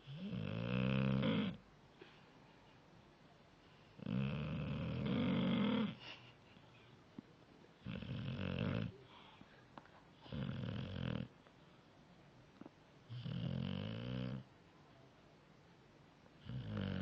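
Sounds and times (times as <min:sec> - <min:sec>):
dog snoring: 0:00.0 - 0:01.6, 0:04.0 - 0:06.0, 0:07.8 - 0:09.1, 0:10.2 - 0:11.4, 0:13.0 - 0:14.5, 0:16.4 - 0:17.0.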